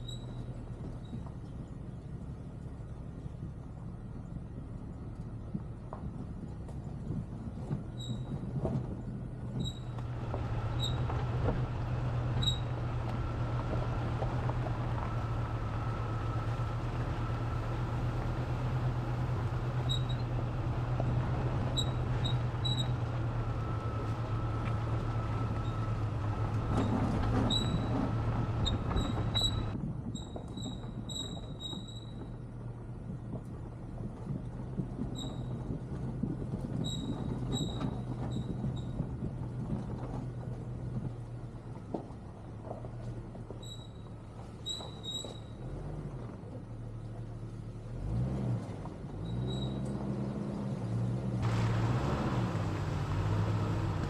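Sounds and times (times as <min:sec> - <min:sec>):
short high squeaks: 0:00.0 - 0:00.4, 0:07.9 - 0:08.4, 0:09.6 - 0:10.0, 0:10.6 - 0:11.2, 0:12.3 - 0:12.8, 0:19.8 - 0:20.4, 0:21.7 - 0:23.0, 0:25.1 - 0:32.3, 0:35.1 - 0:35.6, 0:36.8 - 0:39.0, 0:43.6 - 0:45.6, 0:49.2 - 0:49.9
car engine drone: 0:00.0 - 0:54.0
road noise: 0:00.0 - 0:54.0.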